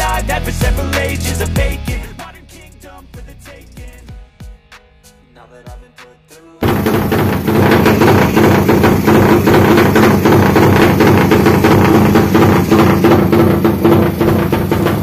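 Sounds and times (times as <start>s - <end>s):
motorcycle engine idling: 6.6s - 15.0s.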